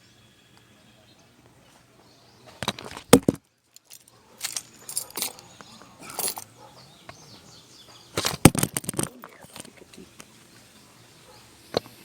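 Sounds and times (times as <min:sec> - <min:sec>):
clatter of small hard objects: 0:08.2 - 0:09.8.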